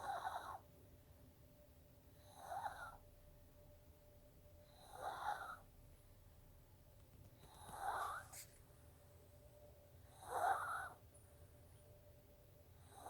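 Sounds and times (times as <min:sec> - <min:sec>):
pet snoring: 0:00.0 - 0:00.6, 0:02.2 - 0:03.0, 0:04.6 - 0:05.7, 0:07.4 - 0:08.4, 0:10.0 - 0:11.0, 0:12.8 - 0:13.0.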